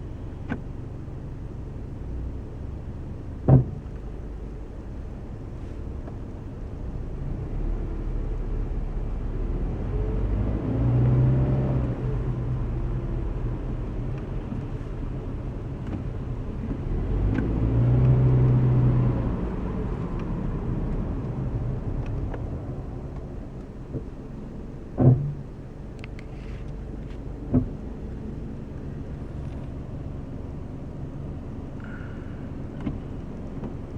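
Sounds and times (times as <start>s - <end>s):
car engine accelerating: 6.8s - 33.9s.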